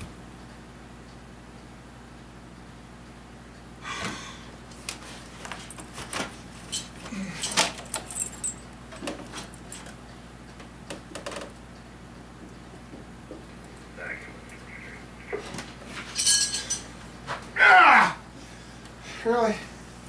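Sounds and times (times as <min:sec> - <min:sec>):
hands and tools rattling dashboard parts: 0:07.4 - 0:09.9.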